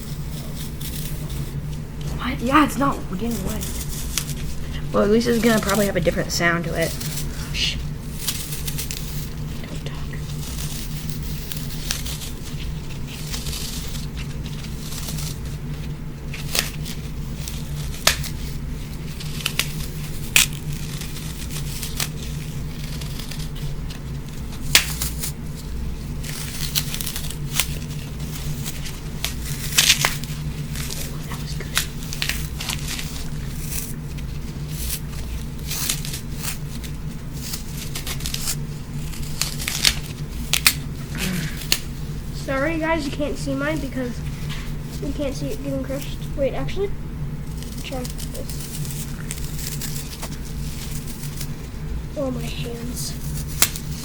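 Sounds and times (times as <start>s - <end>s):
steady low hum: 0.0s - 54.0s
foam crunching and snapping: 8.0s - 42.8s, 52.2s - 54.0s.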